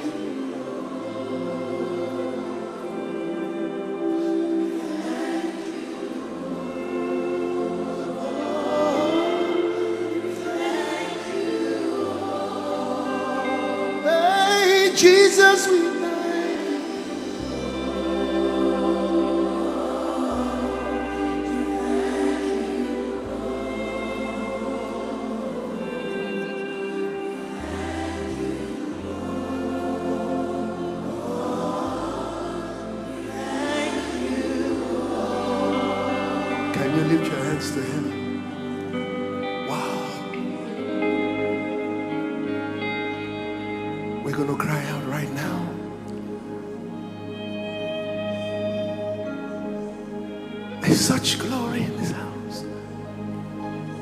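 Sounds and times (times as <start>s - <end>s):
congregation singing: 0.0s - 54.0s
bass: 17.1s - 26.4s, 27.5s - 54.0s.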